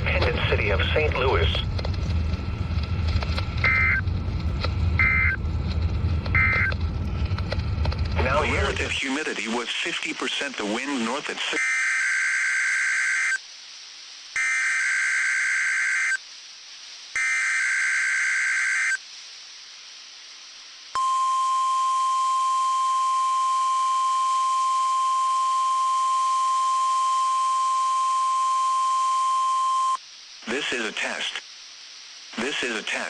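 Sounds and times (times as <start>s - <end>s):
steady single-pitch alarm tone: 3.6s - 4.0s, 5.0s - 5.4s, 6.4s - 6.8s, 11.6s - 13.4s, 14.4s - 16.2s, 17.2s - 19.0s, 21.0s - 30.0s
digital data bursts: 17.2s - 19.0s.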